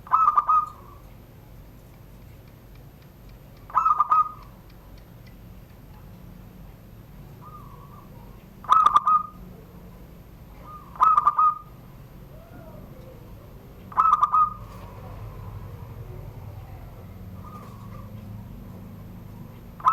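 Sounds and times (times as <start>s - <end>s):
dove cooing: 0.0s - 1.5s, 3.6s - 5.0s, 7.1s - 19.9s
faint bird calls: 0.0s - 1.6s, 2.4s - 19.9s.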